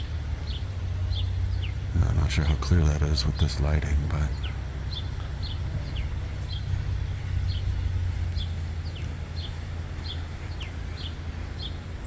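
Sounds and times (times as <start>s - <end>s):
small bird chirping: 0.0s - 11.9s
low rumble of city traffic: 0.0s - 12.0s.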